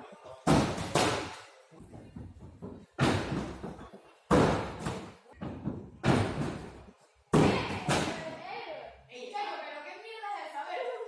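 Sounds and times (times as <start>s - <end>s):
heavy thuds in echoing hall: 0.5s - 8.4s.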